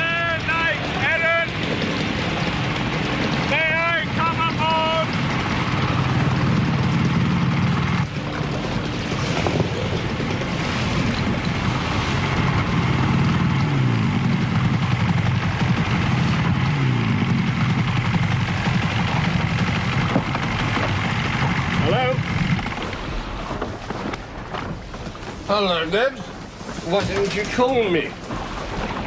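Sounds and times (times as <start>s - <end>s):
motor boat engine running: 0.0s - 29.0s
sea noise: 0.0s - 29.0s
wind: 0.0s - 29.0s.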